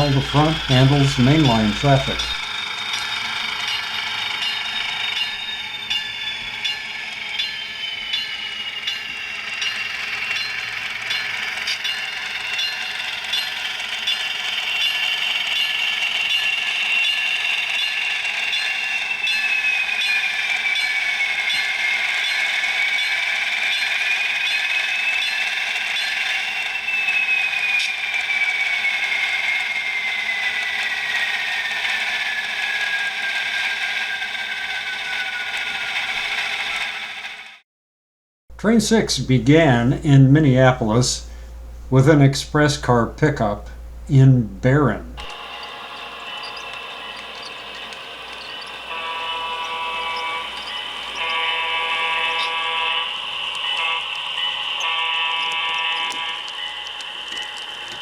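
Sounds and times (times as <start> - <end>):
model train motor whine: 0.0 - 37.6, 45.2 - 58.0
wheels clicking on rails: 0.0 - 37.6, 45.0 - 58.0.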